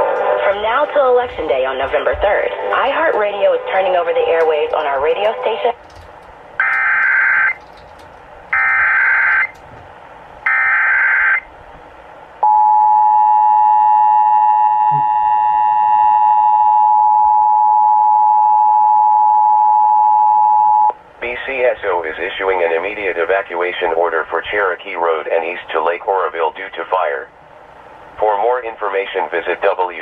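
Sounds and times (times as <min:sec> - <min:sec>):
two-tone alert buzzing tone: 0:08.6 - 0:09.5, 0:12.4 - 0:18.4.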